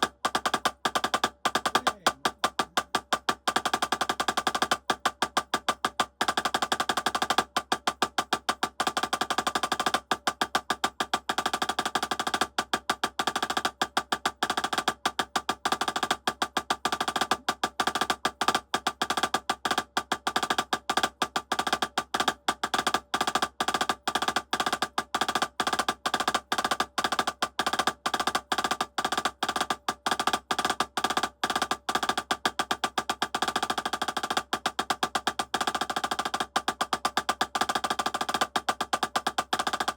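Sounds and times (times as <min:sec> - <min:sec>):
drumsticks playing rapid strokes: 0:01.5 - 0:03.2.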